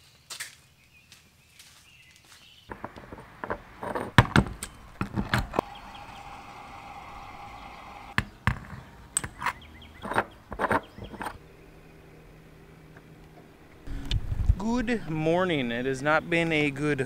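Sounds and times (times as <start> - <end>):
knocks and thumps: 2.7 - 5.7.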